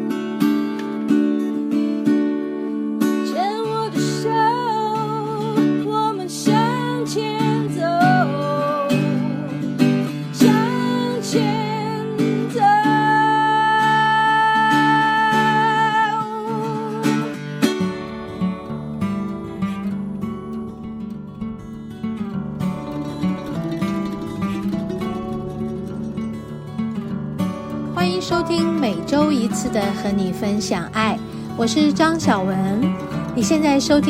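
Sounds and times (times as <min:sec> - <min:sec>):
acoustic guitar: 0:00.0 - 0:34.0
melody with vibrato: 0:21.8 - 0:34.0.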